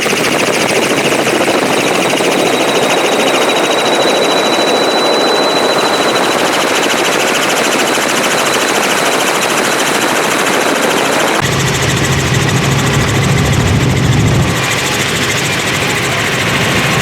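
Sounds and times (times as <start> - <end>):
helicopter rotor pulsing: 0.0 - 17.0
high whine: 1.4 - 7.6, 11.3 - 17.0.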